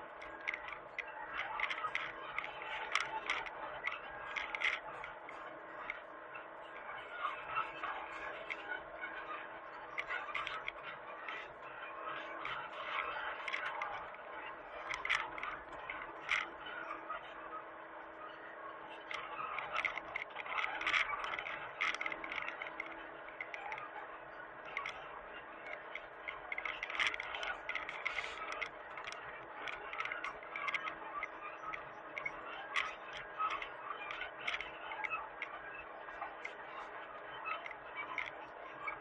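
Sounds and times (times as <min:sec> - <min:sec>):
clicks knocks and scraping: 0:25.7 - 0:34.7.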